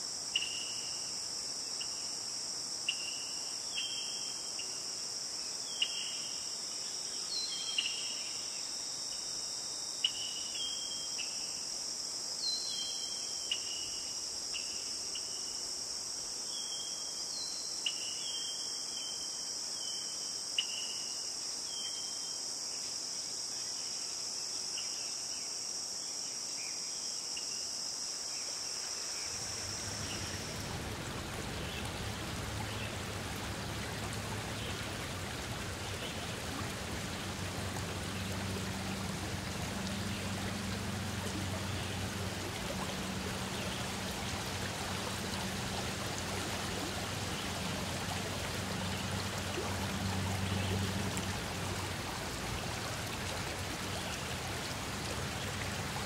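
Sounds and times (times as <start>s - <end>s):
insect chorus trilling: 0.0s - 56.0s
flowing water rushing: 29.0s - 56.0s.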